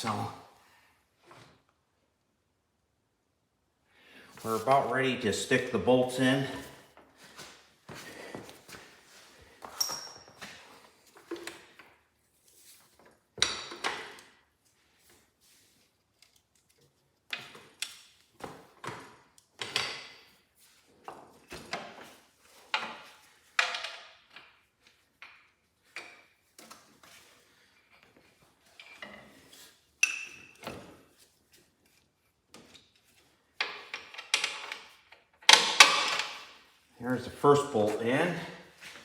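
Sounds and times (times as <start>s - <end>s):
metal clinks and knocks: 9.7s - 10.5s.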